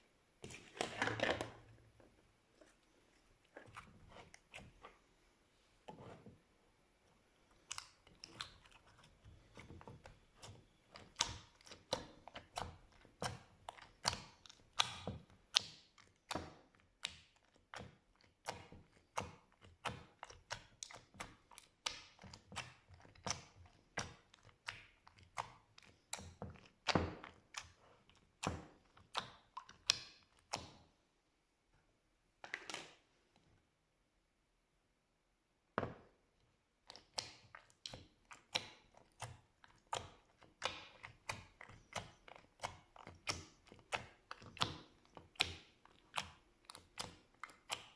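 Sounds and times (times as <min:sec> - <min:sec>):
slime squishing wet clicks: 0:07.6 - 0:30.9, 0:36.8 - 0:47.9.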